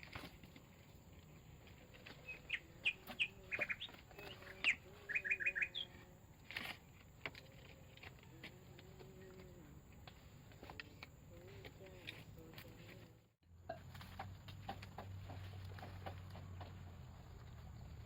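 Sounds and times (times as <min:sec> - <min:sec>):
bird chirping: 0:01.7 - 0:06.1.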